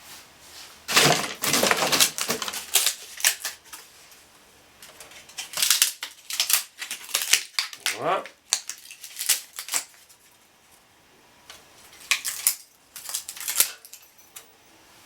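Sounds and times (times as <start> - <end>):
wooden slats clattering and crackling: 0.9 - 3.9.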